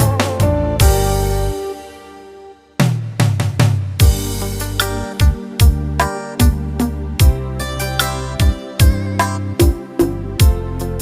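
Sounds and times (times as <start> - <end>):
full band playing: 0.0 - 1.9
drum kit hits: 0.0 - 2.0, 2.8 - 10.7.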